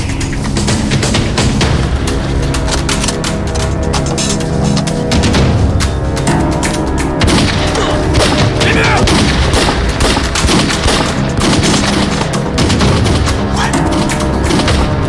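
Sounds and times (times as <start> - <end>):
dramatic music score: 0.0 - 15.0
rifle and machine gun fire: 7.2 - 15.0.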